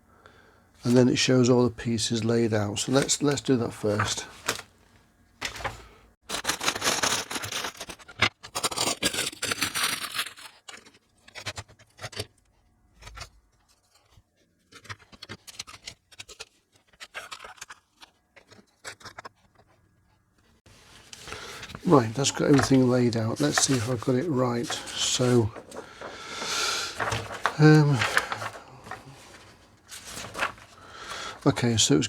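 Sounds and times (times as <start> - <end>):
plastic bags rustling: 20.7 - 32.0.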